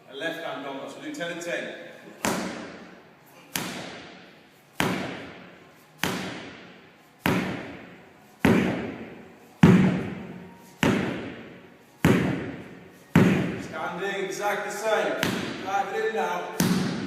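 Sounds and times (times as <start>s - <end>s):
sledgehammer blows echoing: 2.2s - 13.8s, 15.1s - 17.0s.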